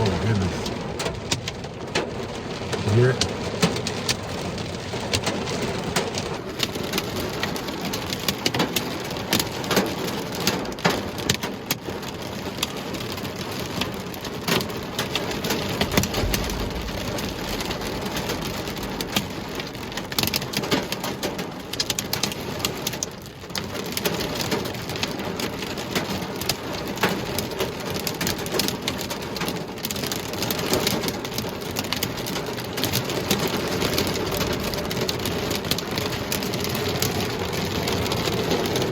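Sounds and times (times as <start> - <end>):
heavy rain downpour: 0.0 - 38.9
rain hitting surfaces: 0.0 - 38.9
low thunder rumble: 15.8 - 19.9.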